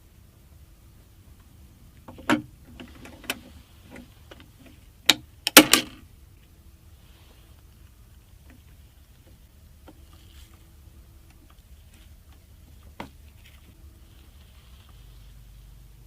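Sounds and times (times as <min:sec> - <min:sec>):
loud clicks of parts: 0:02.0 - 0:06.1.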